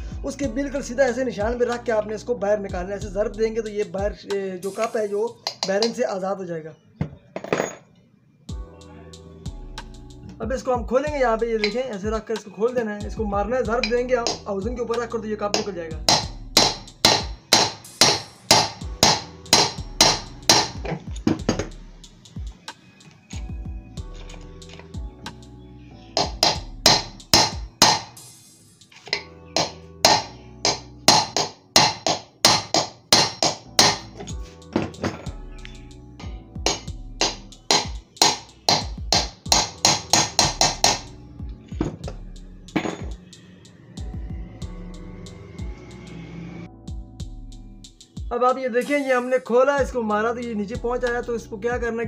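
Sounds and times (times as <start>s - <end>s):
background music: 0.0s - 52.0s
hammer striking metal: 4.7s - 6.0s, 15.6s - 21.7s, 26.2s - 28.2s, 29.0s - 35.3s, 36.2s - 41.2s, 42.8s - 43.3s.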